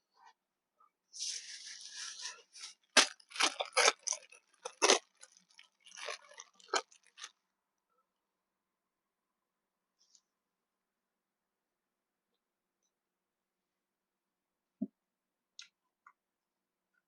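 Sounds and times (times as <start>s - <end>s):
crunchy chewing: 2.6s - 7.4s.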